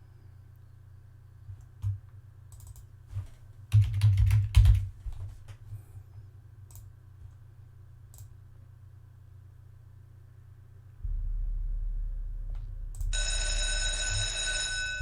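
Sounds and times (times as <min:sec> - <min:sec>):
computer keyboard typing: 0:01.8 - 0:02.8, 0:03.7 - 0:04.9.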